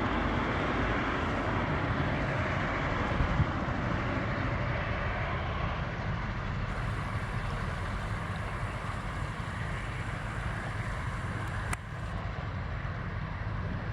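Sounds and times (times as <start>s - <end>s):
ship diesel engine rumble: 6.7s - 12.1s.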